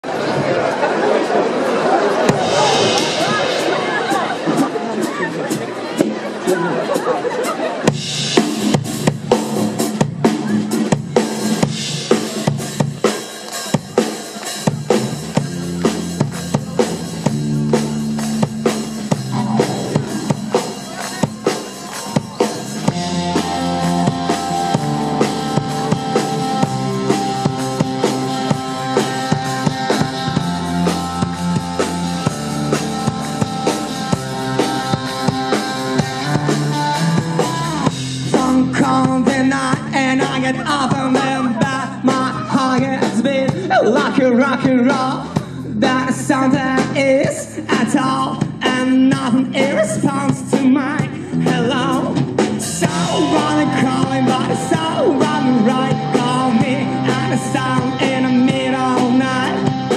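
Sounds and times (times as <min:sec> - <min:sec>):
drum kit hits: 0:02.2 - 0:05.1, 0:17.9 - 0:37.3
bass line: 0:02.2 - 0:05.6, 0:14.6 - 0:59.9
sustained chord notes: 0:17.4 - 0:37.2.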